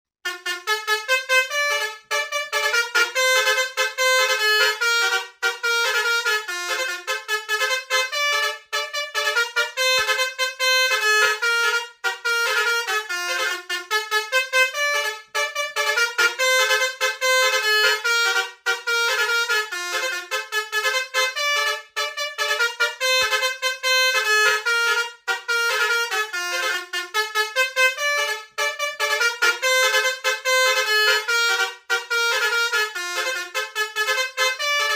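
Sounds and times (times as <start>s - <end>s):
musical bus horns: 0.2s - 34.9s.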